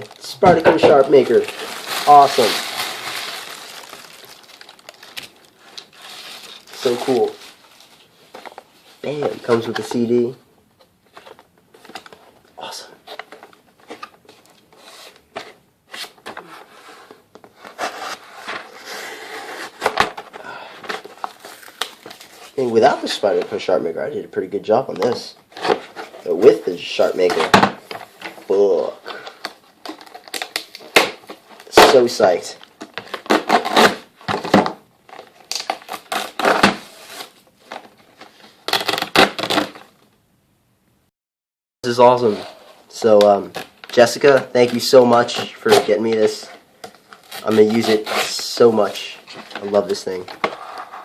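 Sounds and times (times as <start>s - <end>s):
rustling and rubbing of box: 0.0s - 10.1s, 13.0s - 23.6s, 25.5s - 28.4s, 46.4s - 51.0s
box contents being moved: 0.0s - 10.2s.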